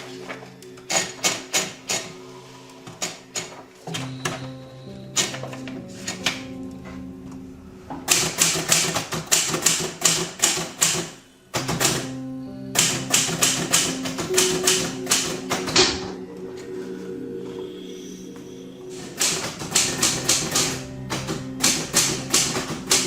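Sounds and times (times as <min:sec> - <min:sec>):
background music with low notes: 0:00.0 - 0:23.0
typewriter keys clacking: 0:12.8 - 0:15.8.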